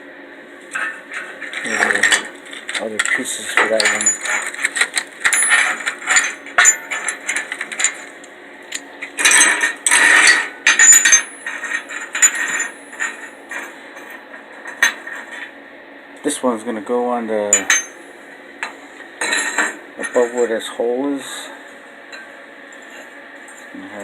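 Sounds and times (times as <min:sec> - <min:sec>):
metal hinge pieces clinking: 0:00.8 - 0:08.1, 0:08.7 - 0:14.1, 0:17.5 - 0:18.0.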